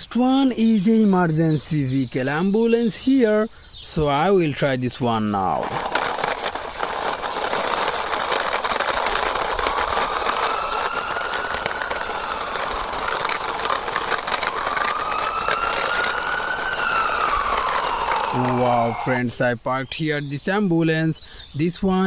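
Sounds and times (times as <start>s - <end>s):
toy wheels rolling and rattling: 5.0s - 19.2s
toy siren wailing: 7.4s - 19.3s.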